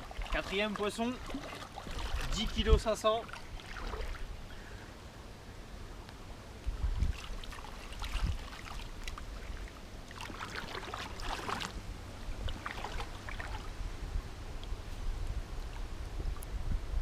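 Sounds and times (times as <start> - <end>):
water splashing and sloshing: 0.0 - 4.6, 6.6 - 15.0
wind rumble on microphone: 1.2 - 4.5, 6.4 - 17.0.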